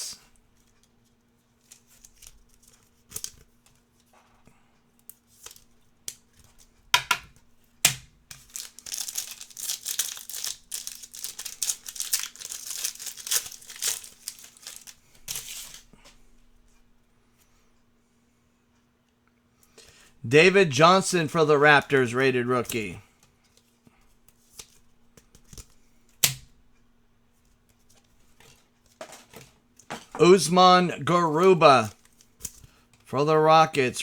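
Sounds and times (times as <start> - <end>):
wrapper crinkling: 8.3 - 15.8
card pack being torn open: 8.4 - 15.8.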